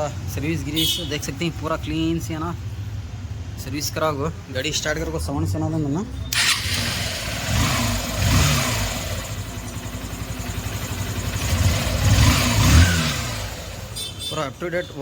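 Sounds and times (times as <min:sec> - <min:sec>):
motorcycle engine revving: 0:06.3 - 0:14.3.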